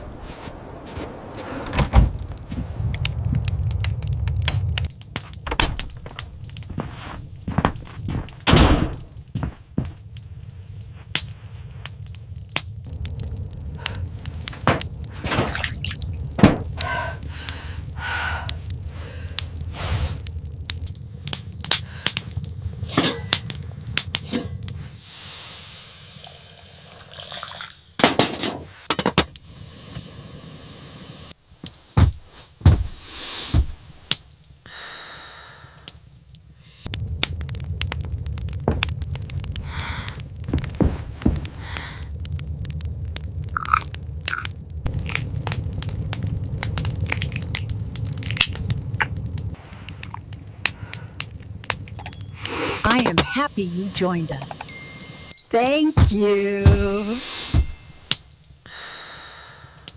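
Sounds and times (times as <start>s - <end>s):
low steady rumble: 0.0s - 25.0s, 36.2s - 55.3s
knocks and thuds: 5.4s - 6.0s, 7.5s - 9.9s, 16.4s - 16.7s, 32.0s - 33.0s.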